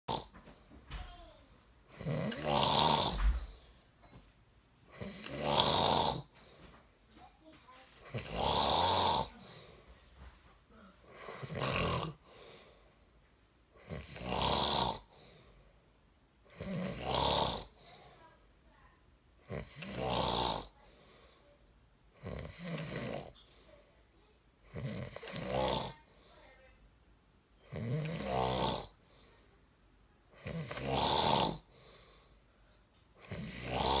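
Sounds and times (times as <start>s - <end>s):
man snoring: 0.1s - 0.3s, 1.9s - 3.5s, 4.9s - 6.3s, 8.1s - 9.4s, 11.2s - 12.5s, 13.8s - 15.1s, 16.5s - 17.7s, 19.5s - 20.7s, 22.2s - 23.3s, 24.7s - 26.0s, 27.7s - 29.0s, 30.4s - 31.7s, 33.2s - 34.0s
quiet breathing: 2.0s - 4.2s, 6.0s - 14.2s, 14.9s - 16.7s, 17.6s - 19.9s, 20.5s - 26.8s, 27.6s - 30.9s, 31.5s - 34.0s.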